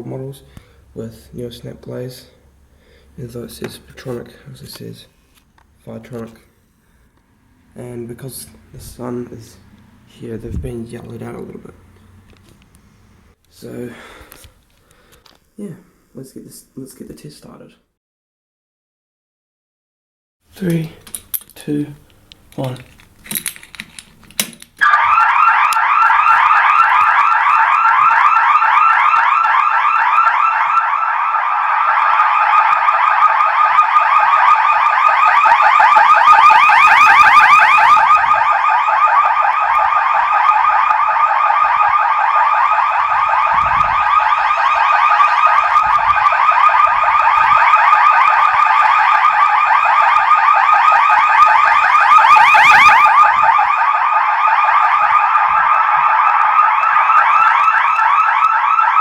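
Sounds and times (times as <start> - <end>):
fast-pulsing fire alarm tone: 24.8 - 59.0.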